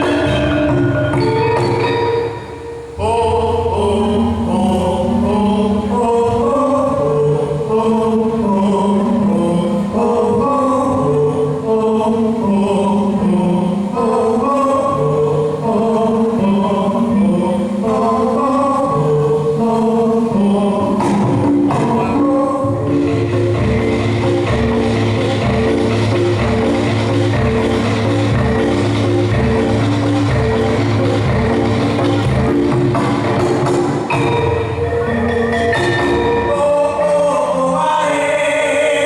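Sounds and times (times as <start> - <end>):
dance music: 0.0 - 39.0
group of voices singing: 3.0 - 25.0, 35.0 - 39.0.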